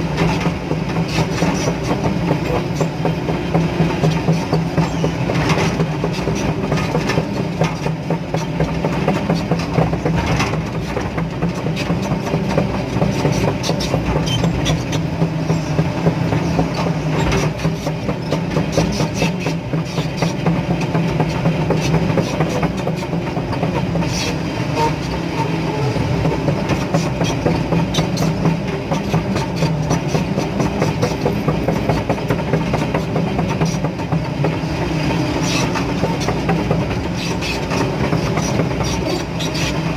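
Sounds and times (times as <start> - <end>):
excavator diesel engine running: 0.0 - 39.9
knocks and clatter: 0.0 - 39.9.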